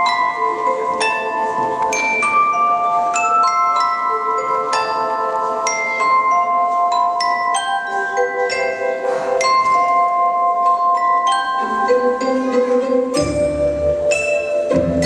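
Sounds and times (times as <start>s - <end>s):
bell-like struck notes melody: 0.0s - 15.0s.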